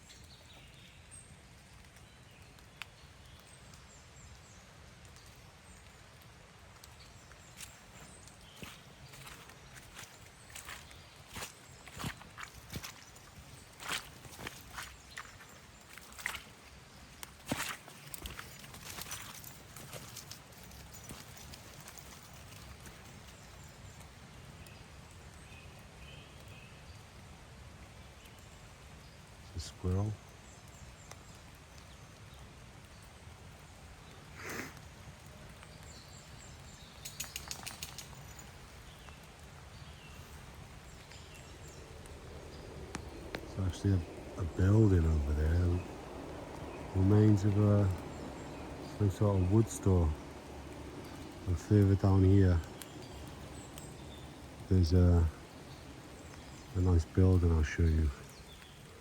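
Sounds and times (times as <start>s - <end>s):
faint footsteps on forest floor: 1.6s - 25.4s, 34.3s - 59.0s
distant bird chirps: 6.8s - 26.7s, 35.6s - 59.0s
low steady rumble: 40.3s - 57.8s.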